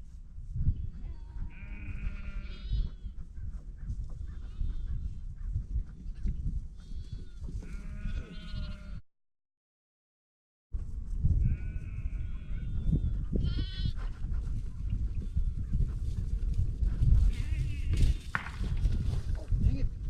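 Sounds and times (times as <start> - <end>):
sheep bleating: 1.4 - 3.0, 6.8 - 9.0, 11.4 - 14.0, 17.3 - 18.1.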